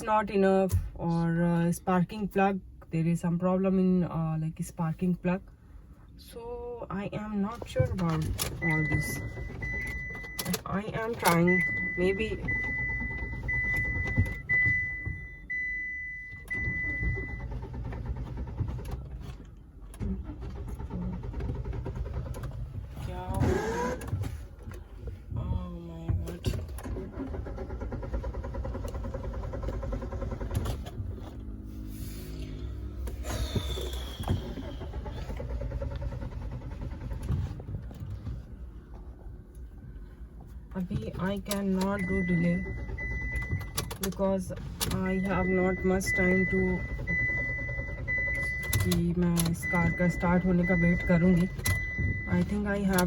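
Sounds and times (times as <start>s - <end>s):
car engine cranking: 6.9s - 53.0s
car warning chime: 7.7s - 17.8s, 40.8s - 53.0s.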